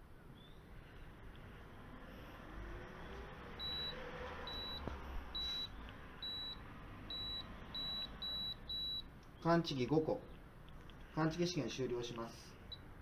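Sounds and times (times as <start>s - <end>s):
short high beeps: 3.6s - 4.8s, 5.4s - 9.0s.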